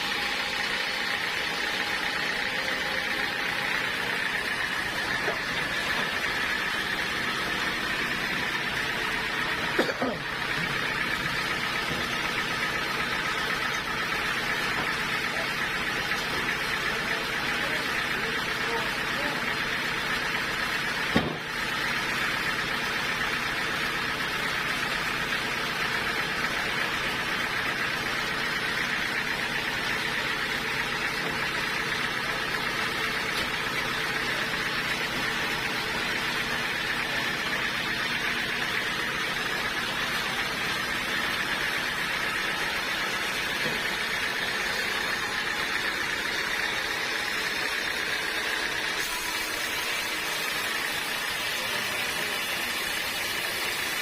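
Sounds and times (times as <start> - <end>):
sawmill machinery running: 0.0 - 54.0.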